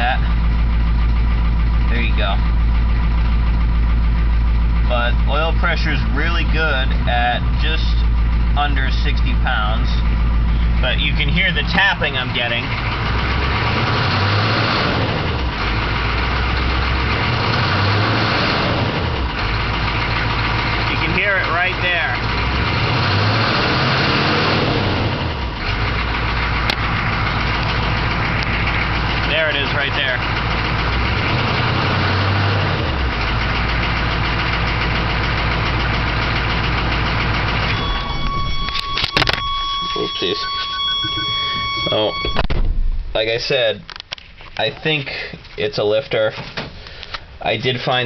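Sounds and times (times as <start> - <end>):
diesel engine idling: 0.0 - 48.0
electronic beeping tone: 37.7 - 42.5.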